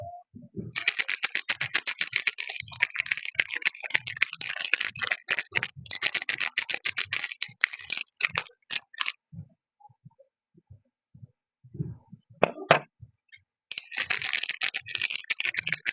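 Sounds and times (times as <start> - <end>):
packaging crinkling: 0.8 - 9.1, 13.7 - 15.9.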